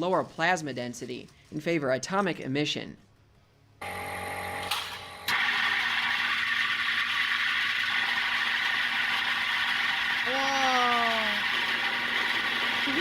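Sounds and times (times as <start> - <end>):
microwave oven electrical hum: 3.8 - 13.0.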